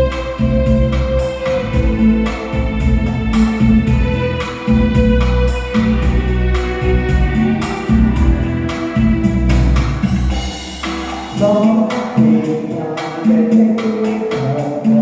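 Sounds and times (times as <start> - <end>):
instrumental backing with steady beat: 0.0 - 15.0
person singing: 11.4 - 15.0.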